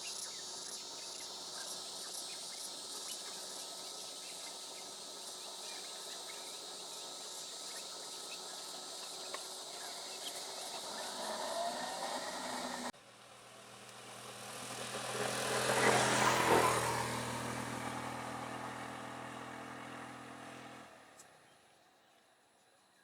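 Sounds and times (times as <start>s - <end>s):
insects chirping: 0.0s - 12.9s
motor vehicle driving past: 9.7s - 21.2s.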